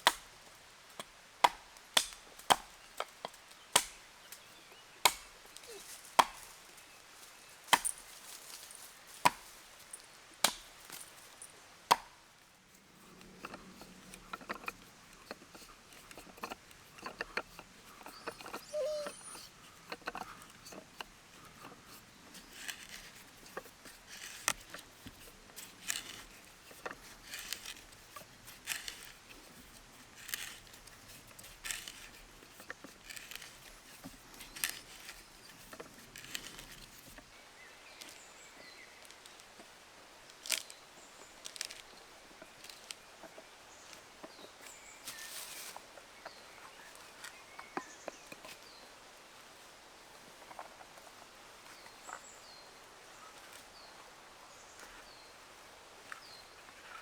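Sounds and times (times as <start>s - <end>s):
knife shaving wood: 0.0s - 6.7s, 7.7s - 9.7s, 11.9s - 37.3s, 40.3s - 45.8s.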